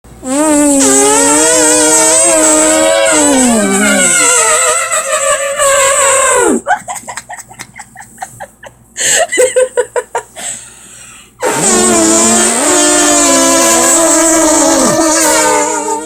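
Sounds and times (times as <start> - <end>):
woman imitating elephant trumpet: 0.2 - 6.6, 11.4 - 16.0.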